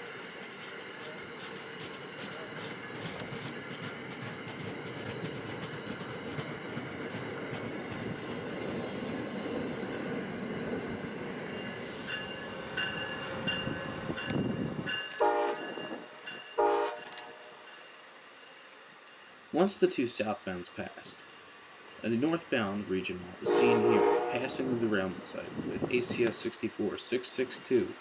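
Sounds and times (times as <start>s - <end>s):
train wheel and rail rumble: 0.0s - 28.0s
train horn blasts: 15.1s - 17.7s, 23.4s - 25.1s.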